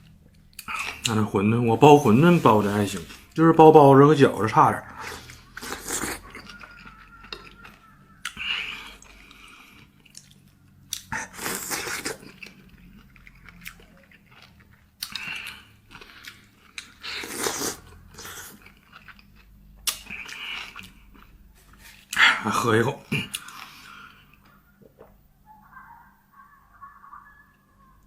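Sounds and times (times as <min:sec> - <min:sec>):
person chewing crunchy food: 0:04.7 - 0:22.2, 0:23.0 - 0:25.1.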